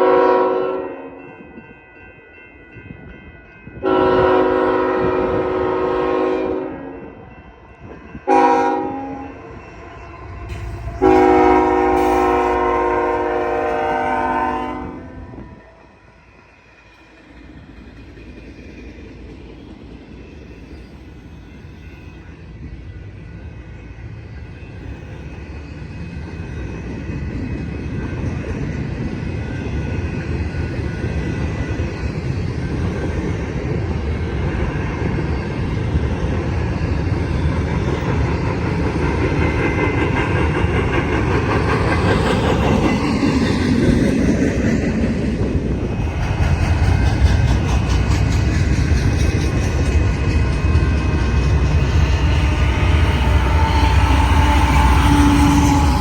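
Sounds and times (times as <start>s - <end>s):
train horn blast: 0.0s - 1.2s, 3.8s - 7.1s, 8.2s - 9.5s, 10.5s - 15.6s, 52.1s - 56.0s
train rumble and rolling wheels: 0.0s - 56.0s.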